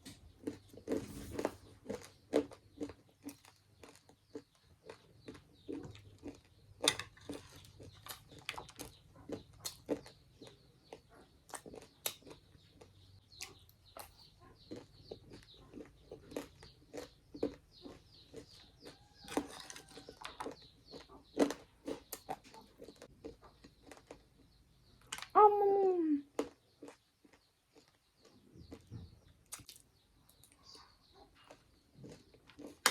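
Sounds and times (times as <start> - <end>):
chewing with wet mouth smacks: 1.8 - 24.6, 26.4 - 32.9.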